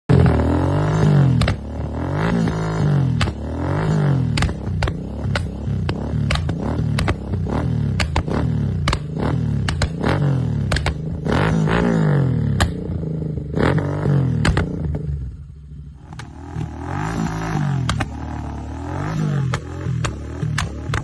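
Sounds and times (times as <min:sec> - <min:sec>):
motorcycle engine revving: 0:00.1 - 0:21.0
exhaust pops and crackles: 0:01.0 - 0:11.2, 0:14.3 - 0:14.9, 0:16.1 - 0:18.2, 0:19.4 - 0:21.0.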